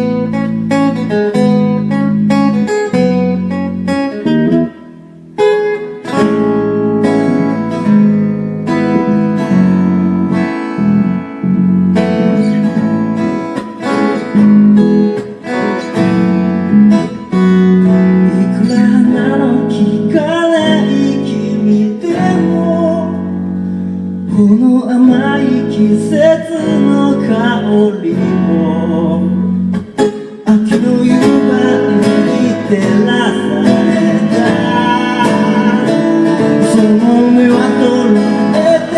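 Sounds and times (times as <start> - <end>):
acoustic guitar strumming: 0.0 - 38.9
person singing: 17.0 - 23.4, 24.2 - 38.9.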